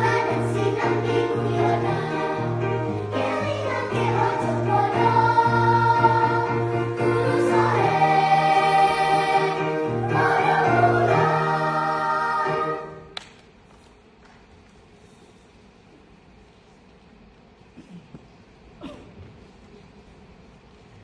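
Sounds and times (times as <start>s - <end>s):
choir singing held chords: 0.0s - 13.2s.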